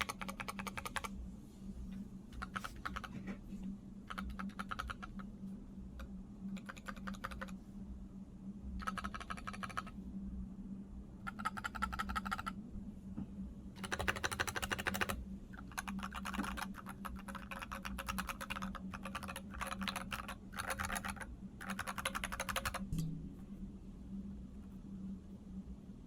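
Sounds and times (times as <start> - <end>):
mechanical keyboard typing: 0.0 - 1.1, 2.4 - 3.2, 4.1 - 5.2, 6.5 - 7.6, 8.8 - 9.9, 11.3 - 12.6, 13.8 - 22.9.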